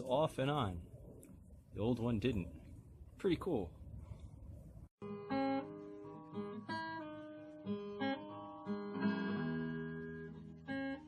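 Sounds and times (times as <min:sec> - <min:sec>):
acoustic guitar chords: 0:05.0 - 0:11.0.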